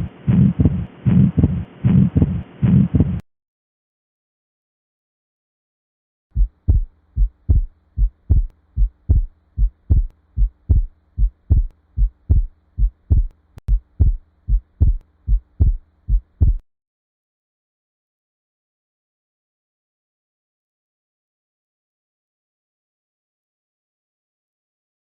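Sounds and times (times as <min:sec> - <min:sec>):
faint steady hum: 0:00.0 - 0:03.2, 0:06.4 - 0:16.6
heartbeat through stethoscope: 0:00.0 - 0:03.2, 0:06.4 - 0:16.6.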